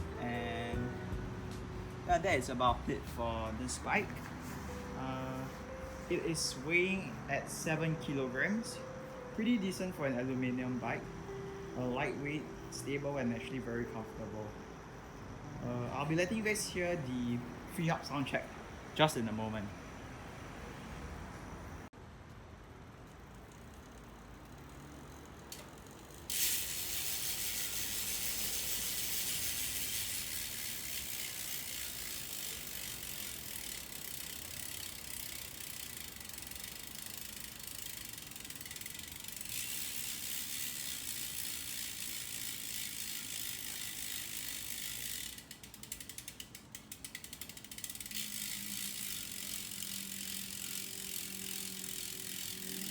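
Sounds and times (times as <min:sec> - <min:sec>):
bicycle freehub ratcheting: 0:23.1 - 0:52.9.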